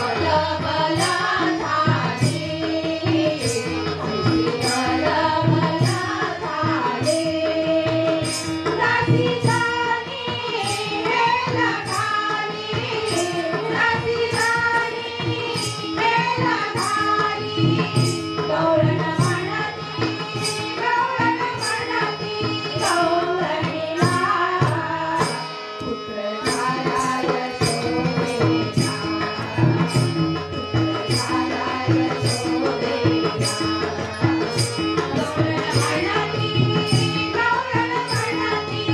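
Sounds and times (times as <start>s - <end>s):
women singing folk song: 0.0s - 38.9s
hand drum: 26.6s - 38.9s.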